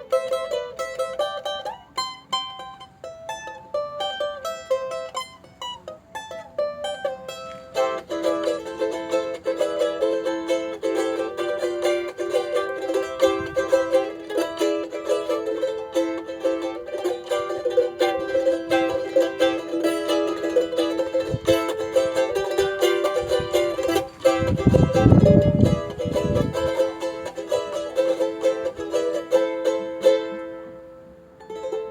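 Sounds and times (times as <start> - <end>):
charango strummed chords: 0.0 - 31.9.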